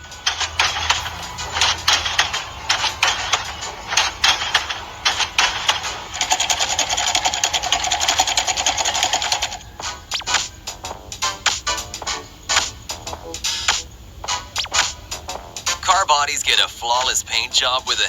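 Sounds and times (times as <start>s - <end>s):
fast mechanical rattle: 0.0s - 9.8s.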